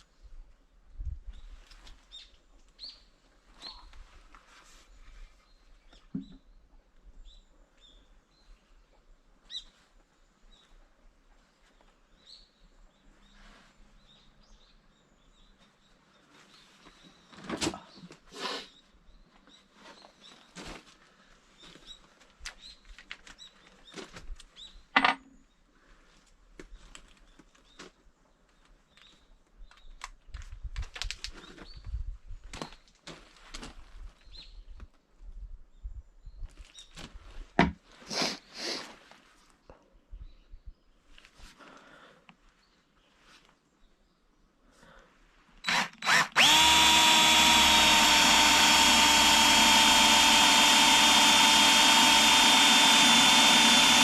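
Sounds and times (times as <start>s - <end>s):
knocks and clicks of objects handled: 25.0s - 25.4s.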